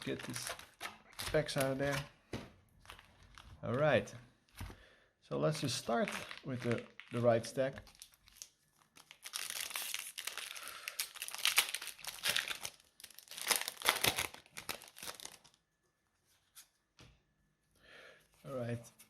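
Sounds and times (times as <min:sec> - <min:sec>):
foil wrapper crinkling and tearing: 0:00.0 - 0:02.1, 0:02.8 - 0:03.8, 0:05.8 - 0:15.6.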